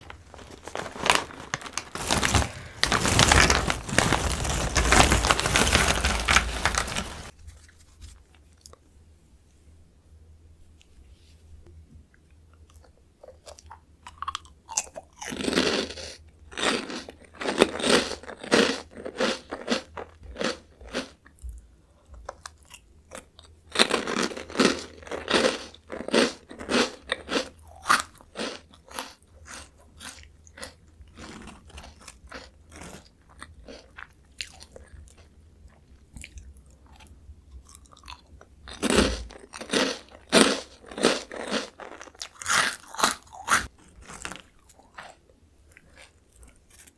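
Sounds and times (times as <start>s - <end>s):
crunchy crackers being bitten: 12.7s - 21.4s, 22.3s - 46.9s.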